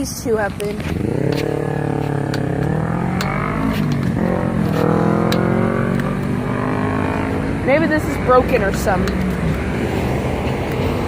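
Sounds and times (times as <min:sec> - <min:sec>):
vehicle engine accelerating: 0:00.4 - 0:11.0.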